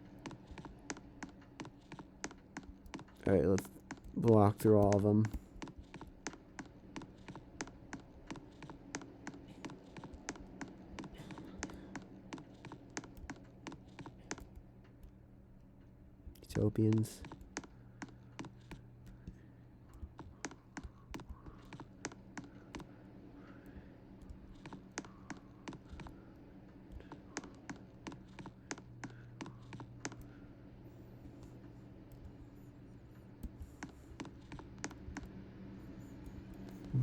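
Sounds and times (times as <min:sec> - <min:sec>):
ceiling fan motor hum: 0:00.0 - 0:37.0
sharp clicks and ticks: 0:00.2 - 0:15.2, 0:16.3 - 0:22.9.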